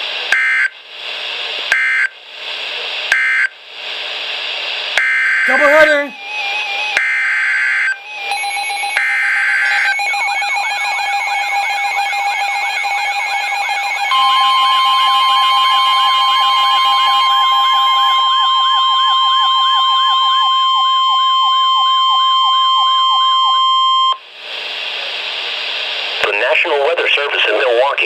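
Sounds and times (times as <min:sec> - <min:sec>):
radio static hiss: 0:00.0 - 0:06.9, 0:09.5 - 0:10.0, 0:24.2 - 0:28.0
rise-and-fall siren-like alarm: 0:05.0 - 0:24.2
steady alarm tone: 0:05.0 - 0:24.2.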